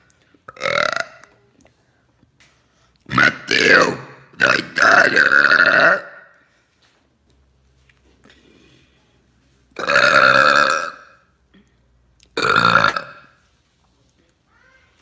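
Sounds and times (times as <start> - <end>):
woman burping loudly: 0.5 - 1.3, 3.1 - 6.3, 9.8 - 11.7, 12.4 - 13.4.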